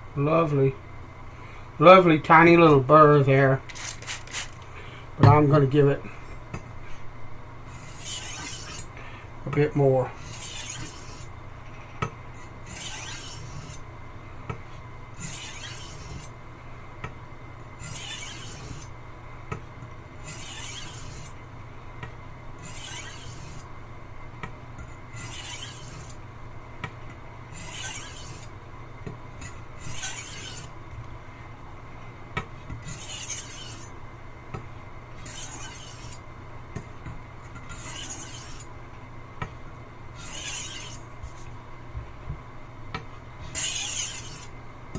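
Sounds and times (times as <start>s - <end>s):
knife scraping on wet whetstone: 7.8s - 8.9s, 10.2s - 11.3s, 12.7s - 13.8s, 15.2s - 16.3s, 17.8s - 18.9s, 20.2s - 21.3s, 22.6s - 23.6s, 25.2s - 26.2s, 27.6s - 28.5s, 29.4s - 30.7s, 32.8s - 33.9s, 35.2s - 36.2s, 37.7s - 38.7s, 40.2s - 41.5s, 43.4s - 44.5s.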